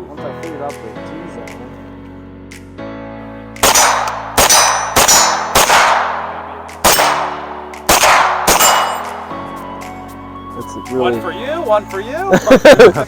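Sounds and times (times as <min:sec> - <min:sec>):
gunshots with metallic ringing: 0:03.6 - 0:09.3.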